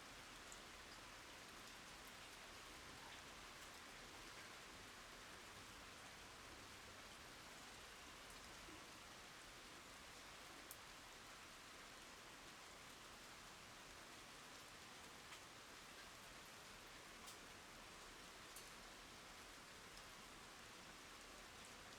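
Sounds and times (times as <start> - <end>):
faint steady rain: 0.0 - 21.9.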